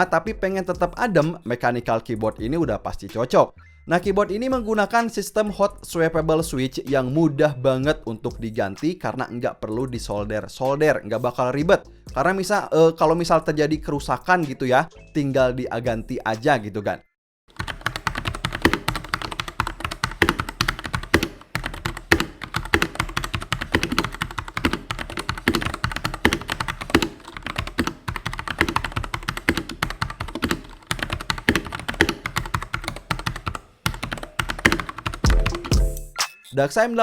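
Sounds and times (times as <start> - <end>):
typing on mechanical keyboard: 17.5 - 35.8.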